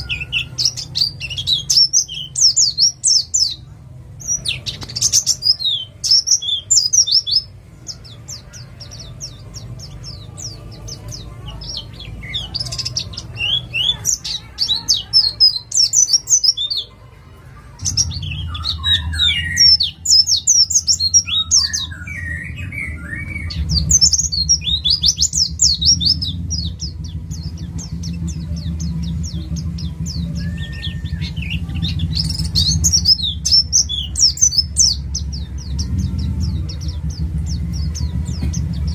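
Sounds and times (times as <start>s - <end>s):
bird singing fast high chirps: 0.0s - 38.9s
steady low hum: 17.3s - 38.9s.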